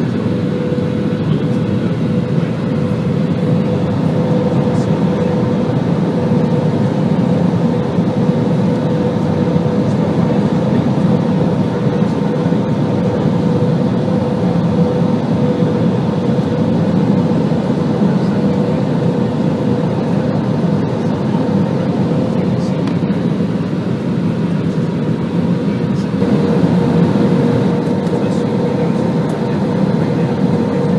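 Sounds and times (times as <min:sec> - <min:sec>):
engine and airflow rumble: 0:00.0 - 0:30.9
mid-pitched whine: 0:00.0 - 0:30.9.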